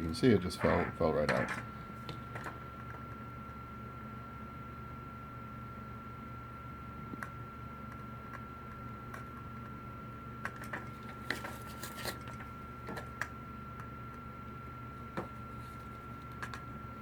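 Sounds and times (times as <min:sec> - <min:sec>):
high whine: 0:00.0 - 0:04.4.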